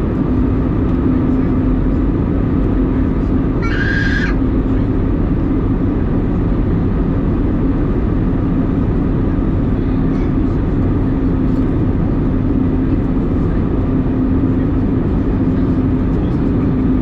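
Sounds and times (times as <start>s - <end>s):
airplane cabin rush: 0.0s - 6.8s.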